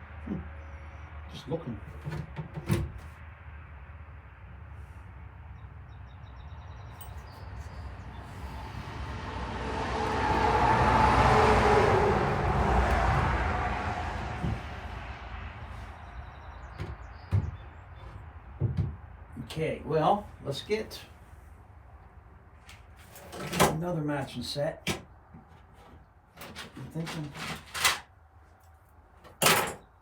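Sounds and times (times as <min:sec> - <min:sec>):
vehicle passing by: 0:07.4 - 0:18.5.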